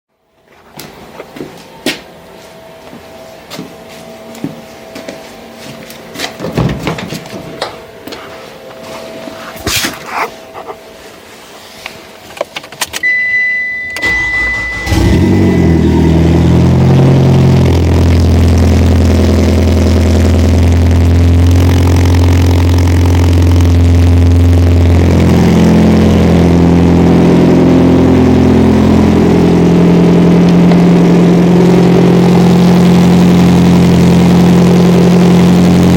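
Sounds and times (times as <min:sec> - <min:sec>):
short high beep: 0:13.0 - 0:17.6
car engine cranking and starting: 0:13.9 - 0:35.9
car engine idling loudly: 0:14.1 - 0:35.9.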